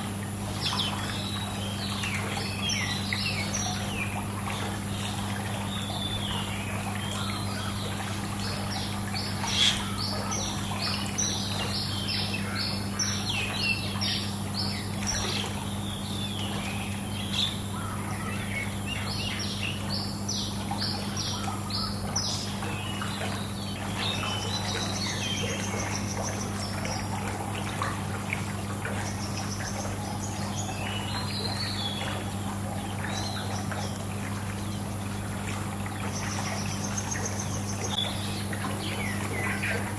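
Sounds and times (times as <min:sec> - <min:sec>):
running pool water: 0:00.0 - 0:39.9
small birds chirping: 0:00.5 - 0:27.3.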